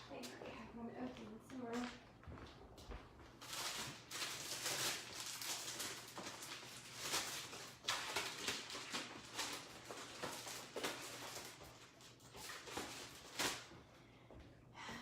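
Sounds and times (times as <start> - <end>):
craft supplies rustling and clattering: 3.4 - 13.7.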